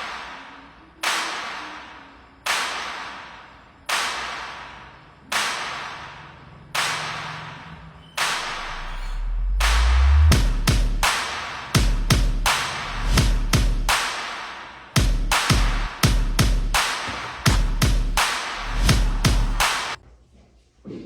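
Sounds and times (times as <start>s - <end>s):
whip-crack hits in music: 2.5s - 20.0s
deep bass: 8.7s - 14.0s, 15.0s - 20.0s.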